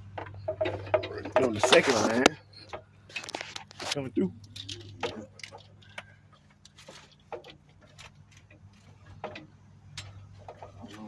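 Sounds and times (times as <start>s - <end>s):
steady low hum: 0.0s - 11.0s
plastic fuel line clicking and knocking: 5.0s - 11.0s.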